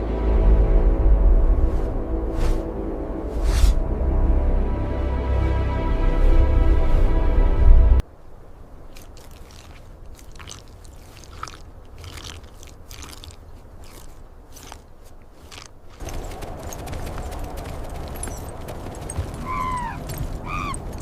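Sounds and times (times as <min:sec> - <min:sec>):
music: 0:00.0 - 0:08.0
crunching and scraping: 0:08.8 - 0:21.0.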